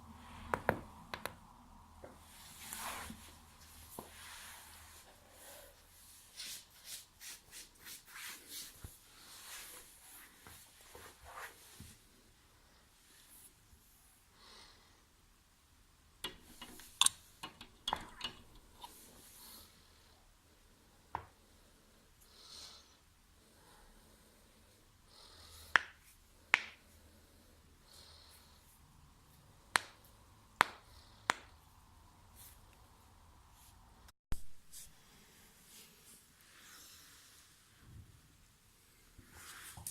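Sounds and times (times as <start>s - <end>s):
joint cracking: 16.2s - 19.0s.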